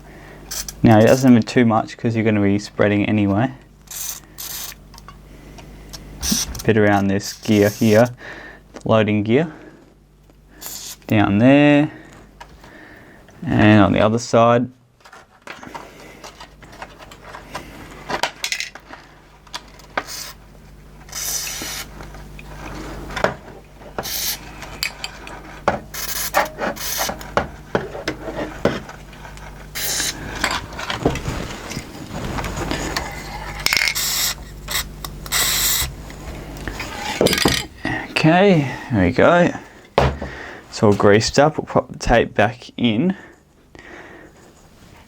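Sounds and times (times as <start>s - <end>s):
low steady hum: 0.0s - 45.0s
rubbing and scraping: 25.4s - 33.4s.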